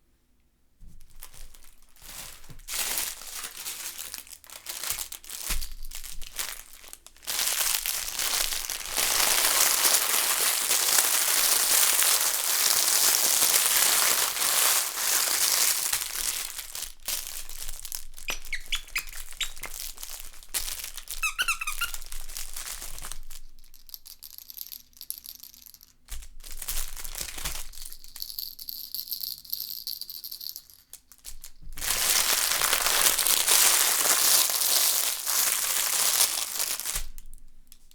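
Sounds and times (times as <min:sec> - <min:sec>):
crinkle toy crinkling: 0:01.0 - 0:37.9
brief squeaks: 0:18.3 - 0:19.8, 0:21.2 - 0:22.0.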